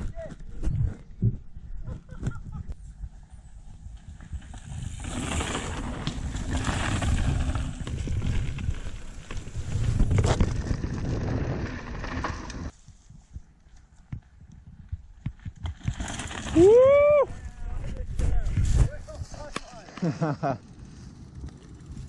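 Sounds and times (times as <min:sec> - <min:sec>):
wind rushing over microphone: 0:00.0 - 0:12.7, 0:14.4 - 0:19.5
tyres rolling over dirt: 0:04.2 - 0:12.8, 0:15.8 - 0:16.9.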